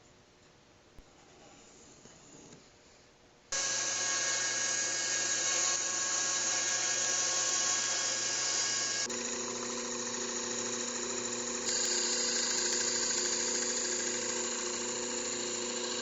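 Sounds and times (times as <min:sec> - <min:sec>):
power tool high whine: 0:03.6 - 0:16.0.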